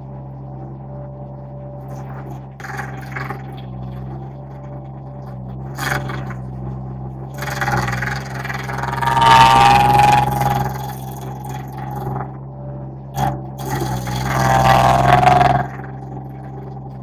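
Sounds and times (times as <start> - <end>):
engine running: 1.9 - 12.4
stump grinder grinding: 7.4 - 12.1, 13.2 - 17.0.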